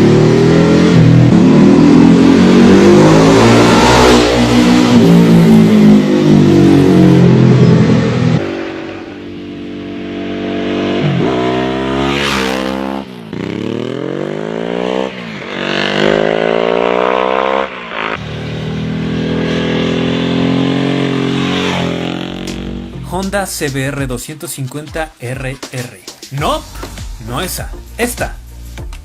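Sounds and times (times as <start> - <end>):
motorcycle engine revving hard: 0.0 - 23.0.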